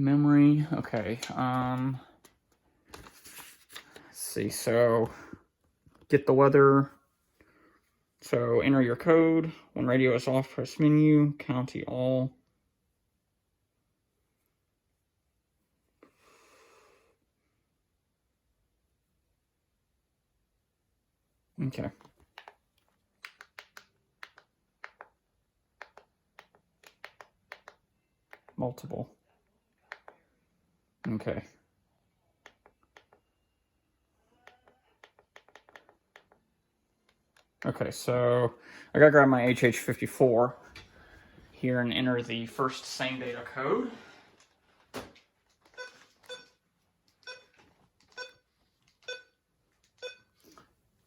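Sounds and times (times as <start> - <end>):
faint electronic keypad beeps: 48.2 - 48.4, 50.0 - 50.4.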